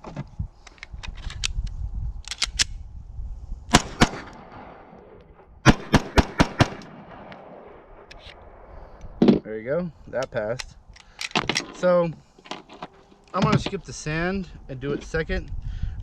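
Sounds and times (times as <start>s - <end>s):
pistol gunshots: 3.7s - 7.9s.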